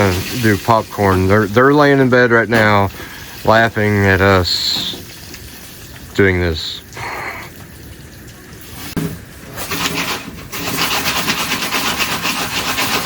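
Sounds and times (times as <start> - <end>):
foil pan scraping on stove top: 8.8 - 13.0.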